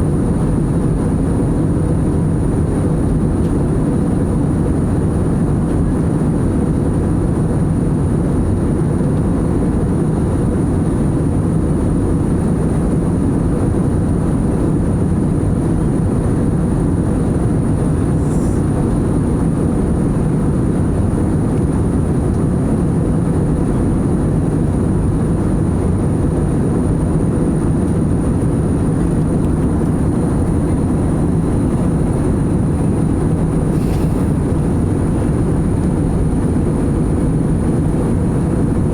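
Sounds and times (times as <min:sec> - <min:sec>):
jet engine and airflow rush: 0:00.0 - 0:38.9.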